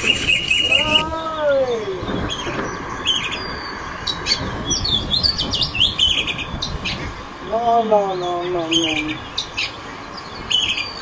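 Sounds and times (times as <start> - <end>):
birds chirping: 0.0 - 11.0
long rising and falling bird call: 0.0 - 11.0
wind hissing: 0.0 - 11.0.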